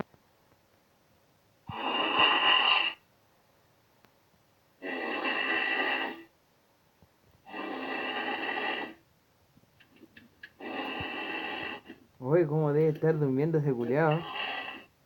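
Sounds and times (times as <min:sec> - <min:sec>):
quiet breaths: 0:01.6 - 0:15.0
man snoring loudly: 0:01.7 - 0:03.0, 0:04.8 - 0:06.3, 0:07.5 - 0:09.0, 0:10.6 - 0:12.0, 0:14.0 - 0:14.9.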